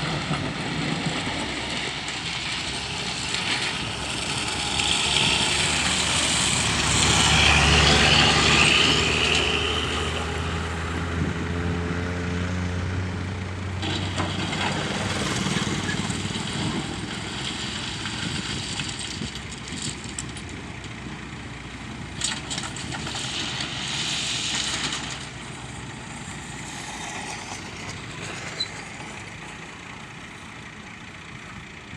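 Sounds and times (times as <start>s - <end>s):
diesel engine running: 0.0s - 31.9s
hiss: 23.0s - 28.4s.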